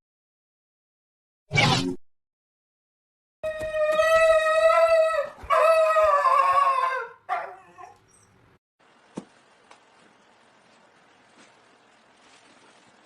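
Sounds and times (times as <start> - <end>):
dog howling: 3.4 - 8.0.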